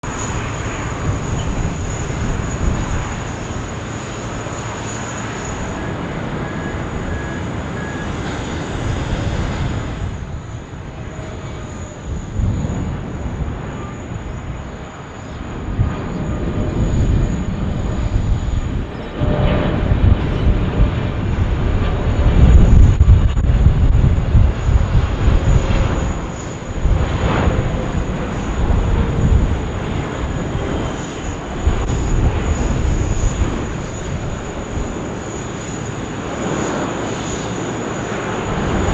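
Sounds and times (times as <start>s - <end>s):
jet engines rumbling: 5.0s - 11.2s.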